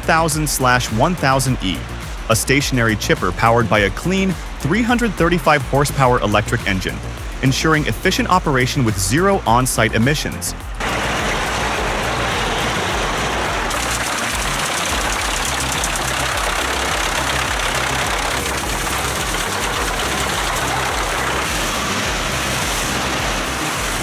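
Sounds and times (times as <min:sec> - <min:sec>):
wood chipper running: 0:10.8 - 0:24.0.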